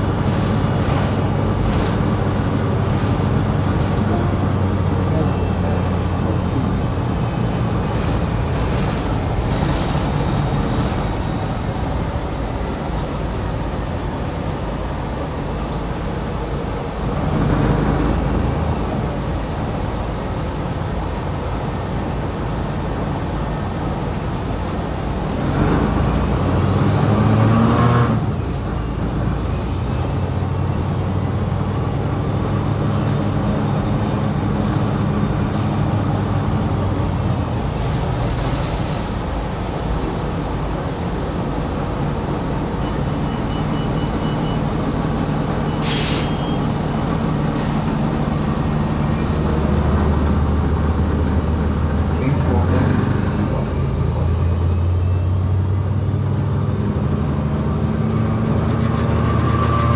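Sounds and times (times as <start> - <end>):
bus engine humming: 0.0 - 59.9
road noise: 0.0 - 59.9.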